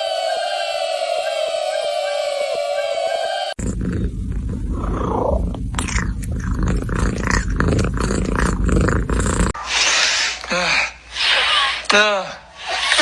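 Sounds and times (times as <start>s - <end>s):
cat purring loudly: 3.6s - 9.6s.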